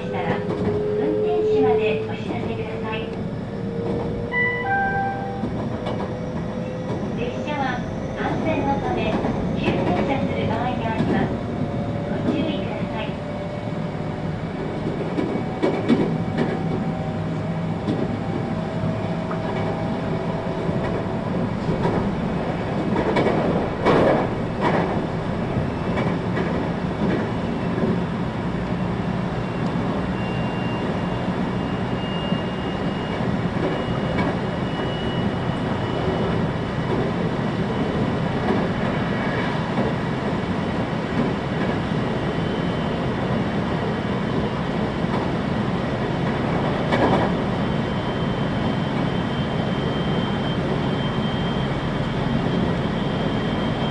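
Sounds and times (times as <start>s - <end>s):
train wheels rumbling on rail: 0.0s - 53.9s
train wheels clattering: 22.8s - 25.1s.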